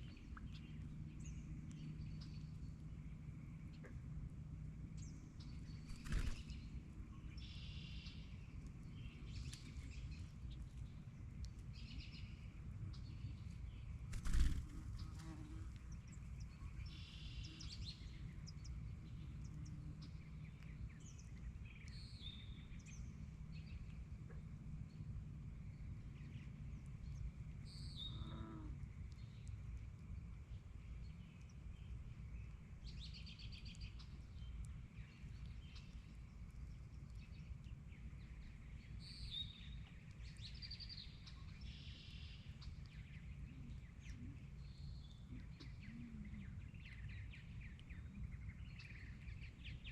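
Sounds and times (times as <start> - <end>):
steady low rumble: 0.0 - 49.9.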